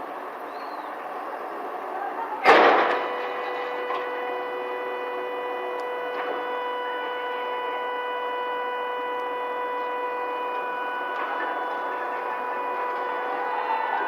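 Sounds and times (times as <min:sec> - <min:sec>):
steady machine whine: 0:00.0 - 0:14.0
mechanical noise: 0:02.4 - 0:14.0
faint clicks: 0:05.7 - 0:06.6, 0:08.9 - 0:09.8.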